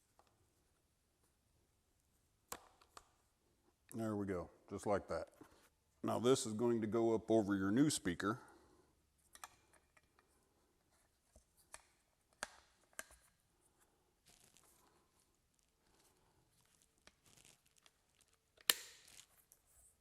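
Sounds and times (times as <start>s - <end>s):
plastic clicks and rustling: 11.3s - 13.4s
plastic snap: 11.7s - 13.3s, 18.6s - 19.3s.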